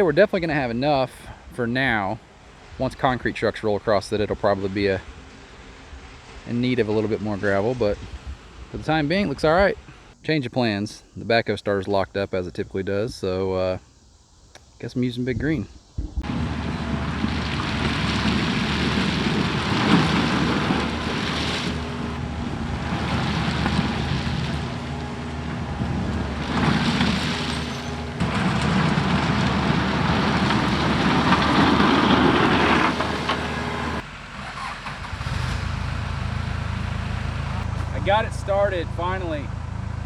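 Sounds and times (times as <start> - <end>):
gravel scraping: 14.8 - 35.8
tractor diesel engine under load: 16.2 - 40.0.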